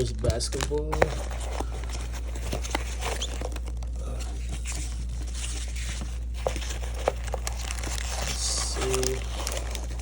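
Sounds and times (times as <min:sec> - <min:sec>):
constant low hum: 0:00.0 - 0:10.0
packaging rustling and crinkling: 0:00.0 - 0:10.0.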